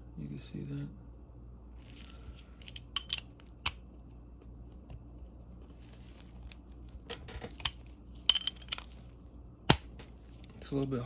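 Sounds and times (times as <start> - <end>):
faint handling of metal parts: 1.8 - 3.8, 5.6 - 11.0.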